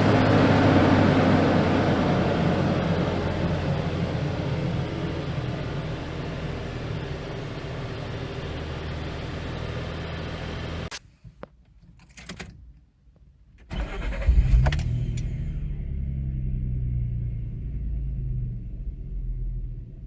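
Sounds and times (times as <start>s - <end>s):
car engine idling: 13.7s - 20.0s.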